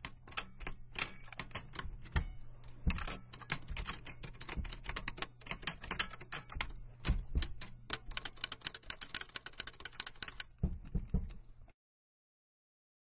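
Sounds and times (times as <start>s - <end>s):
keyboard keys typing: 0.0s - 11.4s
heavier thumps: 10.5s - 11.4s.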